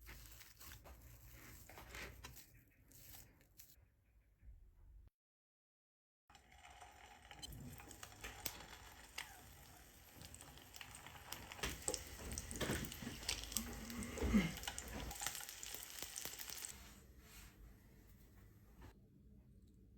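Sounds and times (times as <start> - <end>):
oil crackling and popping: 6.3 - 16.8
food sizzling in oil: 6.5 - 16.8.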